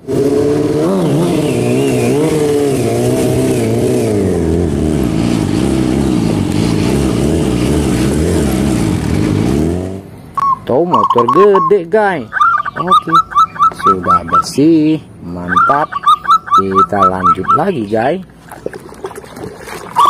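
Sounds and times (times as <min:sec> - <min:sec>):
motorcycle engine revving: 0:00.0 - 0:10.2.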